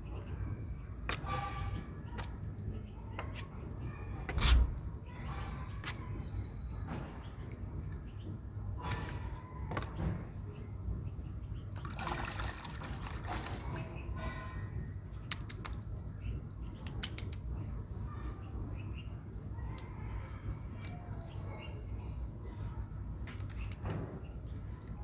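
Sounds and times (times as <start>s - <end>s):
water and wet mud handled: 11.6s - 17.5s, 22.4s - 25.0s
sharp clicks: 15.2s - 15.8s, 16.8s - 17.5s.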